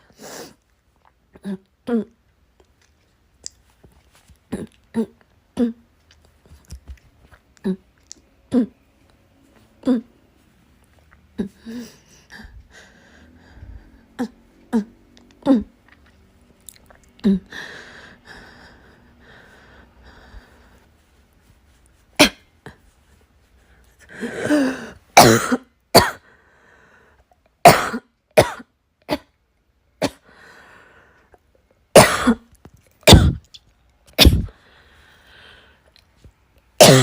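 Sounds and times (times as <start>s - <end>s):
person coughing: 24.2s - 26.2s, 27.7s - 29.3s, 32.0s - 33.5s, 34.2s - 34.5s, 36.8s - 37.0s.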